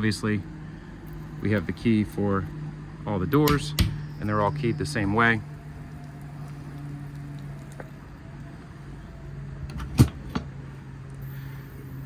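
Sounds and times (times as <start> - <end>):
steady low hum: 0.0 - 12.0
metal door latch clack: 3.4 - 4.2, 9.6 - 10.5.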